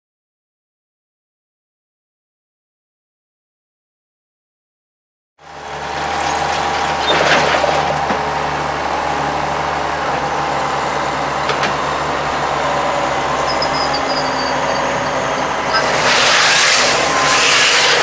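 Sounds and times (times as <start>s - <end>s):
tractor engine running: 5.4s - 18.0s
rush of noise: 13.2s - 18.0s.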